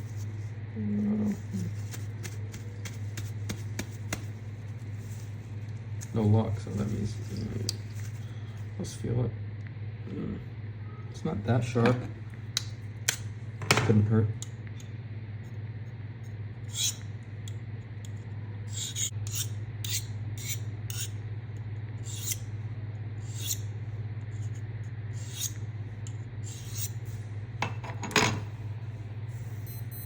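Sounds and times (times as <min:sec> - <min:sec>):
knife blade scraping: 0:16.7 - 0:17.1, 0:18.7 - 0:21.2, 0:22.0 - 0:22.5, 0:23.2 - 0:23.7, 0:24.3 - 0:25.6, 0:26.4 - 0:27.0.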